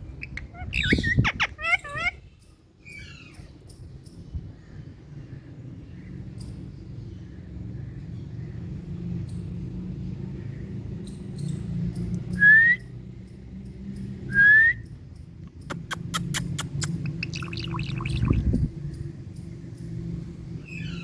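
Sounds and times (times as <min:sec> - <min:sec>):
steady low hum: 0:15.1 - 0:20.8
parakeet clicks and chatter: 0:15.5 - 0:18.7.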